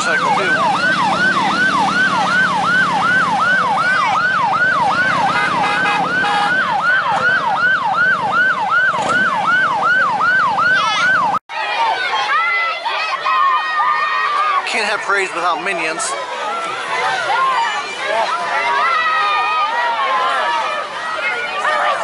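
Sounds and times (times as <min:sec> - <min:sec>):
vehicle engine running: 0:00.0 - 0:10.5
siren yelping: 0:00.0 - 0:11.4.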